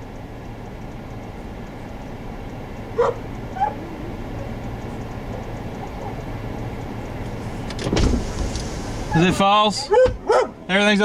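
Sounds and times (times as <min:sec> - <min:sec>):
vehicle engine idling: 0:00.0 - 0:11.0
short high yelps: 0:03.0 - 0:03.9.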